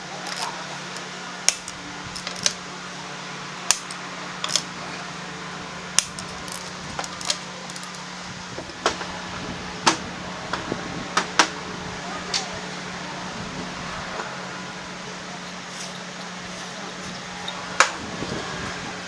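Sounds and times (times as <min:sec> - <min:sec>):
metal tools clinking: 0:00.0 - 0:02.7, 0:03.6 - 0:05.1, 0:05.8 - 0:08.8, 0:15.3 - 0:18.4
steady low hum: 0:00.0 - 0:19.0.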